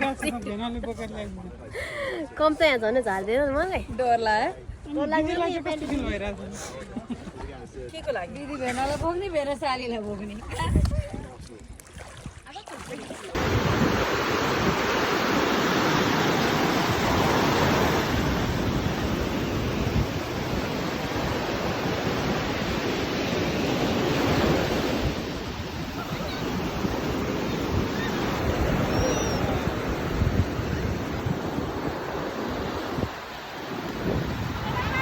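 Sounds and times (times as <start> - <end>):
wind buffeting microphone: 10.3 - 11.5, 13.3 - 35.0
waves washing onto shore: 11.9 - 35.0.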